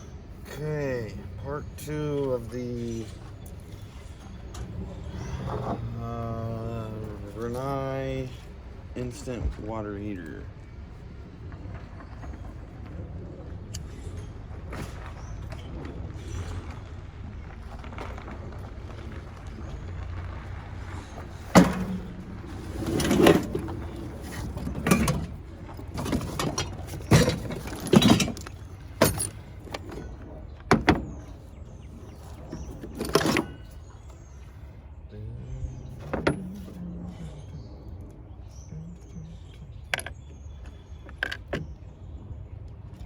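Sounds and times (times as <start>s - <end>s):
steady low hum: 0.0s - 43.0s
metal knocks and clanks: 11.4s - 34.0s.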